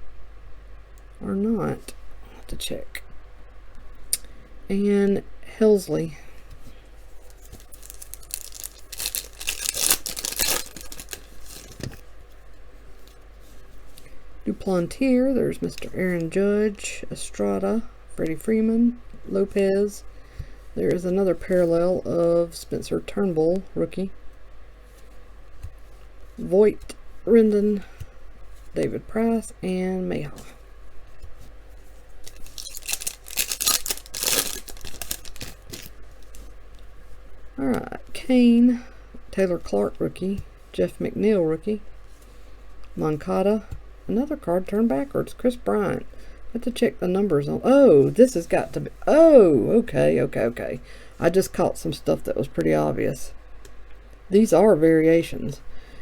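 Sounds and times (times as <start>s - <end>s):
wrapper tearing and crinkling: 7.2s - 12.0s, 32.2s - 36.5s.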